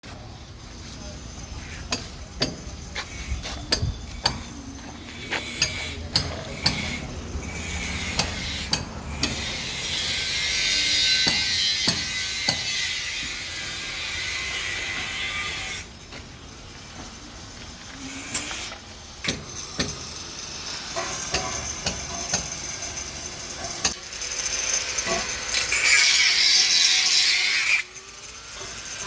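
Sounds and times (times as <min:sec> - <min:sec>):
clanks and taps of steel: 0:03.7 - 0:07.0, 0:20.9 - 0:22.6.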